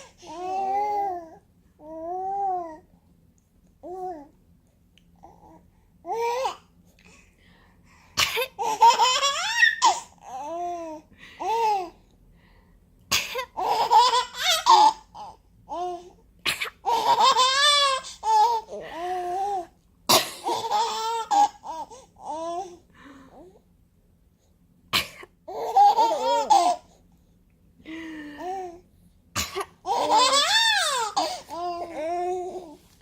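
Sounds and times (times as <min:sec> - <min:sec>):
baby babbling: 0:00.0 - 0:02.8, 0:29.9 - 0:32.8
baby giggling: 0:25.5 - 0:26.8, 0:29.8 - 0:32.0.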